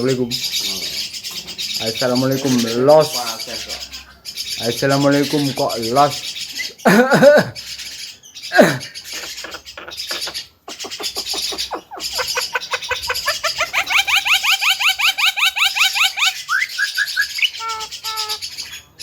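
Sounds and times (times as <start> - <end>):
bird whistled calls: 10.9 - 19.0.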